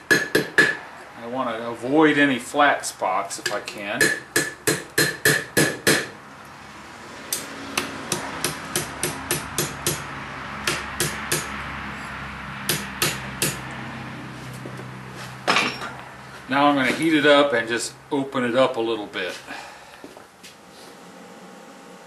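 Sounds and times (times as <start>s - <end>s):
hammer striking iron on anvil: 0.0s - 0.8s, 3.4s - 6.1s, 7.3s - 11.6s, 12.7s - 13.7s.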